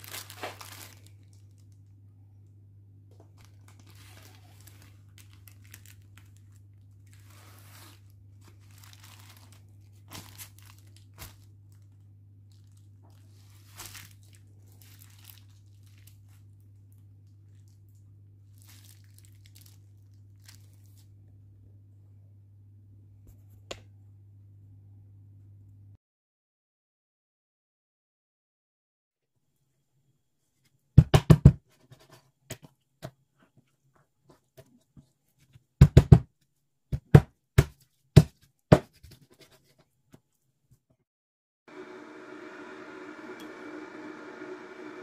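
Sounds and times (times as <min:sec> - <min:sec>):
crinkling and rustling: 0:00.0 - 0:01.9, 0:03.1 - 0:21.2.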